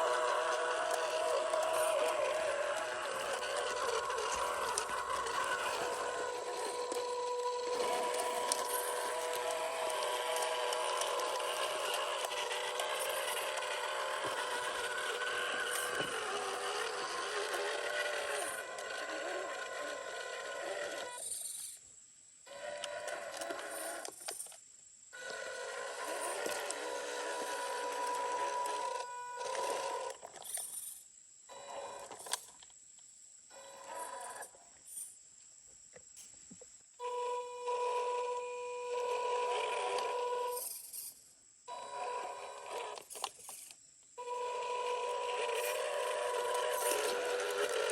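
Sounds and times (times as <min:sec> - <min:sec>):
toy car electric motor whining: 0:00.0 - 0:21.8, 0:22.4 - 0:32.7, 0:33.5 - 0:35.2, 0:37.0 - 0:47.9.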